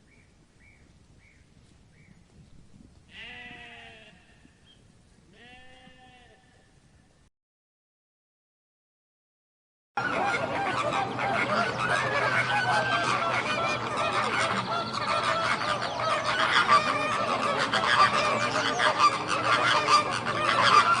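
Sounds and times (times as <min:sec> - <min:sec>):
flock of birds calling: 0:10.0 - 0:21.0.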